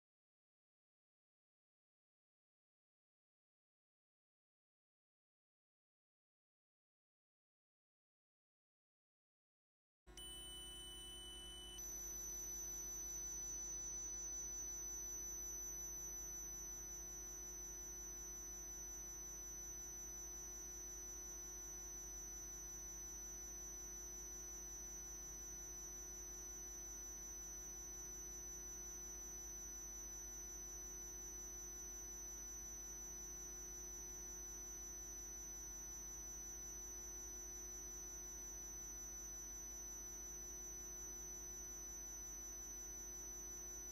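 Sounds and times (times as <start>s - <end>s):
high-pitched electronic whine: 10.2s - 25.2s.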